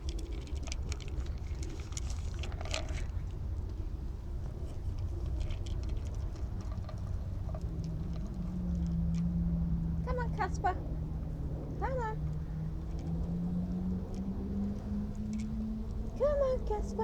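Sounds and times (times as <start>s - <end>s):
small animal feet clicking: 0.0s - 9.4s
rustle: 0.0s - 10.0s, 12.2s - 17.0s
steady low hum: 0.0s - 17.0s.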